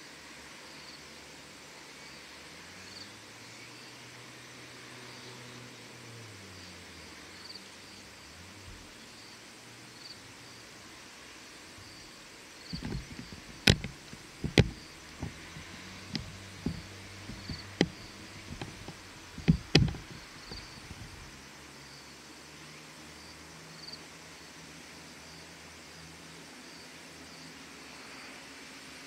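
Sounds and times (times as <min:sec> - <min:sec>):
faint steady hiss: 0:00.0 - 0:29.0
irregular knocks and clicks: 0:12.7 - 0:21.3.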